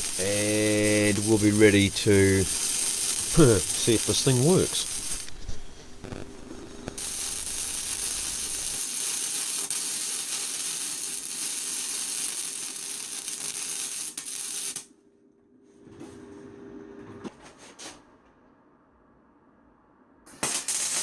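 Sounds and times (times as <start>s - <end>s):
welding arc hissing and crackling: 0.0s - 14.9s, 20.3s - 21.0s.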